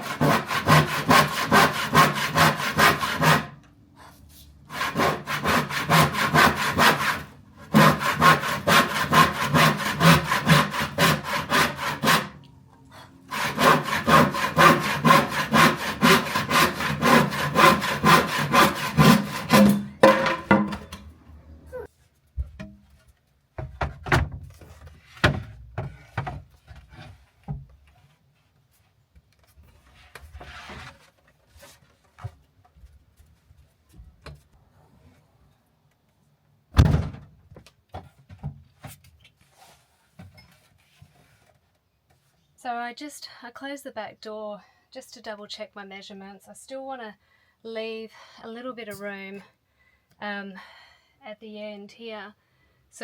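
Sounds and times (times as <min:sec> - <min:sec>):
hand saw cutting wood: 0:00.0 - 0:03.6, 0:04.7 - 0:12.4, 0:13.3 - 0:21.0.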